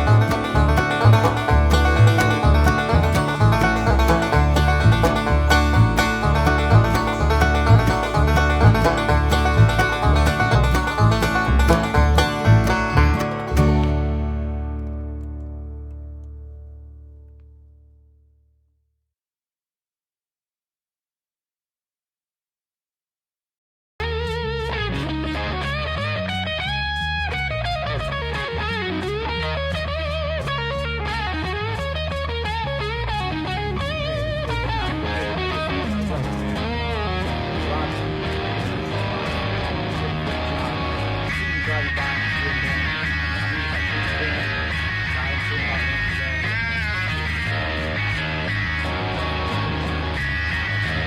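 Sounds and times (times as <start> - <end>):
bluegrass music with banjo and guitar: 0.0 - 16.7, 34.8 - 51.0.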